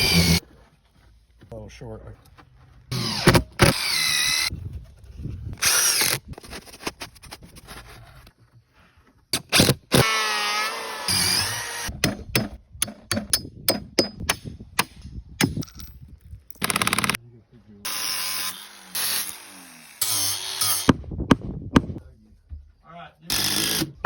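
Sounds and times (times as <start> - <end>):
power tool running: 0.0 - 0.4, 2.9 - 4.5, 9.5 - 11.9, 17.9 - 20.9.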